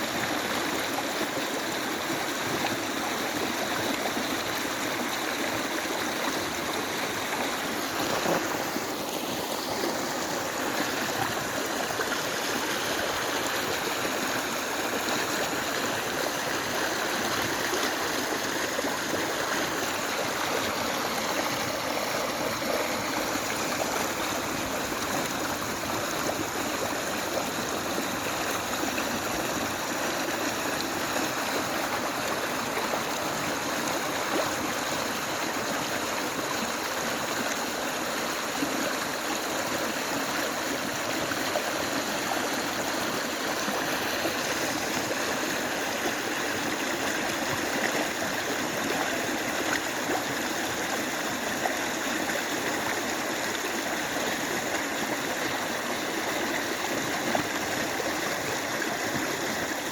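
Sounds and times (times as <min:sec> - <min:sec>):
river water flowing over rocks: 0:00.0 - 0:59.9.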